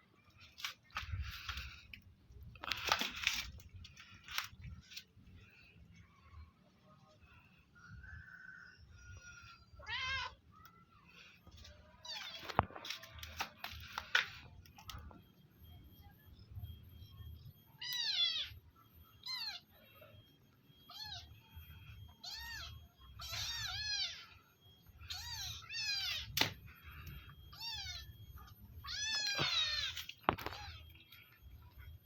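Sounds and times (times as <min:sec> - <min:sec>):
cats meowing: 0:08.7 - 0:12.8, 0:17.7 - 0:31.9.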